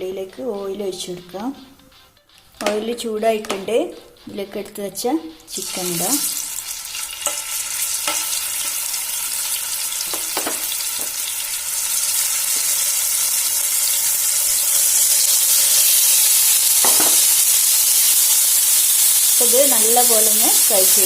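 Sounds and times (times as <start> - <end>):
chicken sizzling in hot oil: 5.5 - 21.0.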